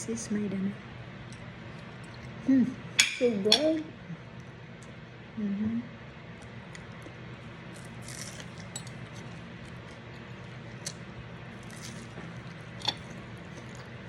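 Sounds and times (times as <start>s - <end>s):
low steady hum: 0.0s - 14.0s
wet chewing: 6.4s - 14.0s.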